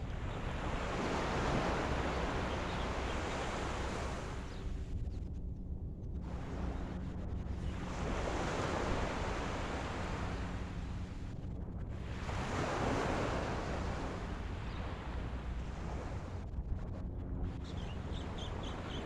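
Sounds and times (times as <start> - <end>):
wind rumble on microphone: 0.0 - 19.0
ocean waves breaking: 7.8 - 11.2, 12.0 - 16.4.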